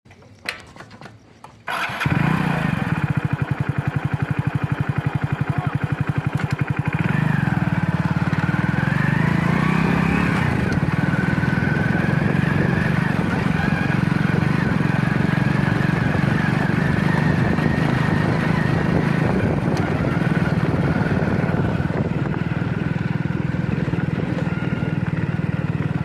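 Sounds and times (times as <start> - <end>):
motorcycle engine starting and running: 0.1 - 26.0
engine whine: 1.7 - 26.0.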